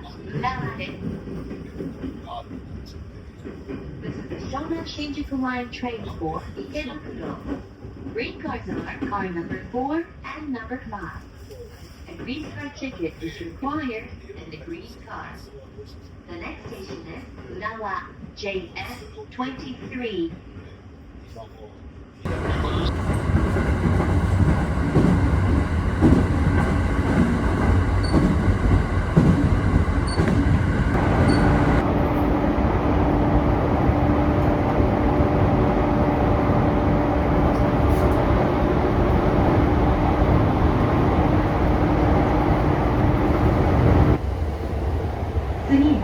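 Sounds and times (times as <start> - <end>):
train wheels rumbling on track: 0.0 - 10.0, 22.2 - 46.0
train motor hum: 22.3 - 46.0.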